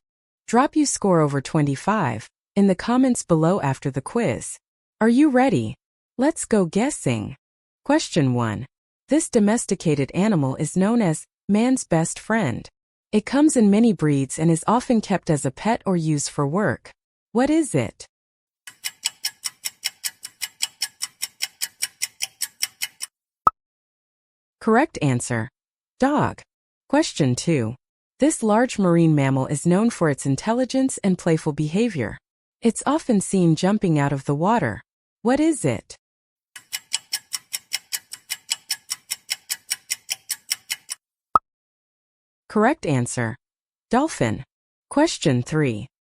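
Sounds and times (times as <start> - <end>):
clock-like ticking: 18.7 - 23.1, 36.6 - 41.0.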